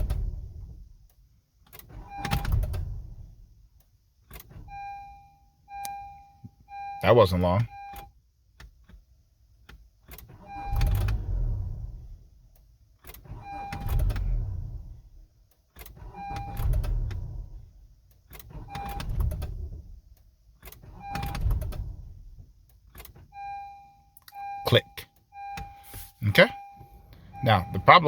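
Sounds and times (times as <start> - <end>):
car starter cranking: 0.0 - 6.2, 7.2 - 28.0
brief beep: 23.4 - 28.0.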